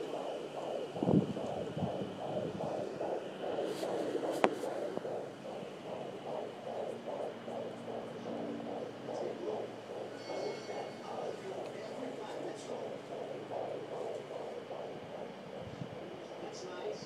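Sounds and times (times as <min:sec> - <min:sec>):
fetal heartbeat whooshing pulses: 0:00.0 - 0:17.0.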